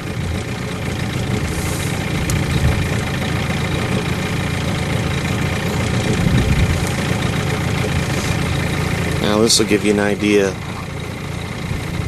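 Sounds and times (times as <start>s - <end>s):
boat motor droning: 0.0s - 12.0s.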